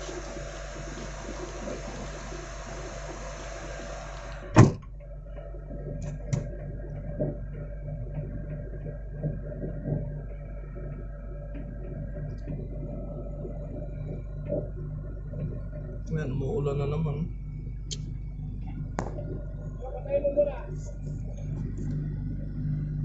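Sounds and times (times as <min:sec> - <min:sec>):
car engine idling high: 0:00.0 - 0:23.0
loud bang of door shutting: 0:04.5 - 0:04.9.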